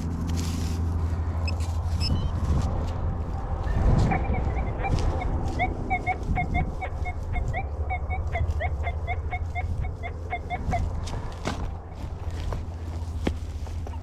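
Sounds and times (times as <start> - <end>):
metal detector beeping: 1.4 - 2.4, 4.0 - 10.8.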